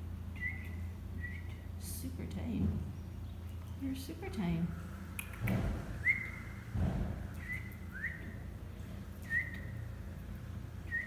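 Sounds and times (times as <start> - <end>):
bird whistled call notes: 0.4 - 1.6, 6.0 - 6.6, 7.4 - 8.4, 9.2 - 9.8.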